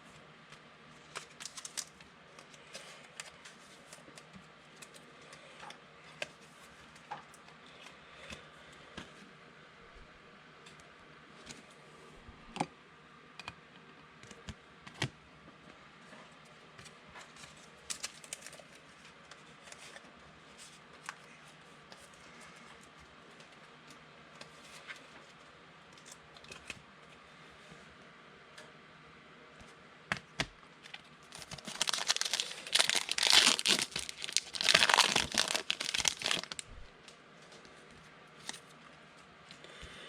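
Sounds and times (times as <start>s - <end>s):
card packs crinkling and clicking: 1.0s - 5.4s, 17.3s - 20.0s, 30.8s - 37.2s, 38.4s - 38.8s.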